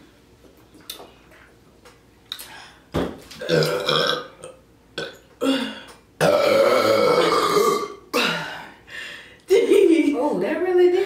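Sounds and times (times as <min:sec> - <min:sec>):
woman burping: 0:03.4 - 0:08.7.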